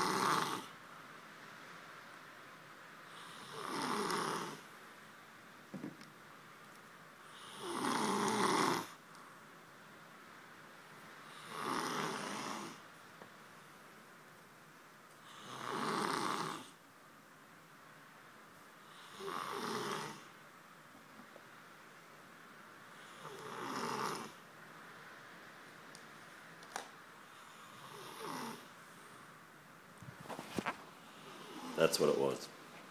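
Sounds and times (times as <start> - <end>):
man snoring: 0.0 - 0.7, 3.1 - 4.6, 7.3 - 9.0, 11.3 - 12.8, 15.3 - 16.8, 18.9 - 20.3, 23.0 - 24.4, 27.4 - 28.7, 31.1 - 31.8.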